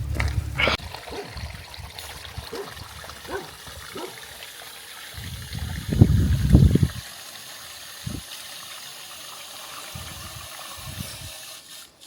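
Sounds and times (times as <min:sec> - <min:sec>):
low rumble: 0:00.0 - 0:00.8
water trickling and splashing: 0:00.0 - 0:12.0.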